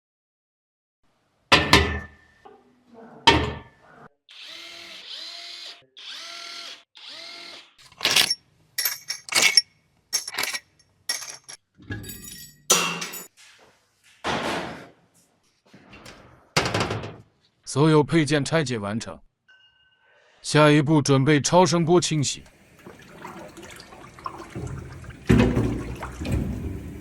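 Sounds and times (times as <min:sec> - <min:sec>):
cordless power tool spinning: 0:04.3 - 0:08.4
metal engine parts clanking: 0:07.8 - 0:13.3.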